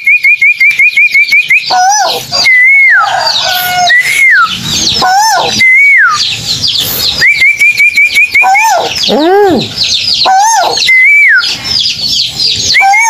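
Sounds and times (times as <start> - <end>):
steady high chirping: 0.0 - 13.0
whistled bird notes: 0.0 - 13.0
deeper arching bird call: 7.2 - 11.5, 12.7 - 13.0.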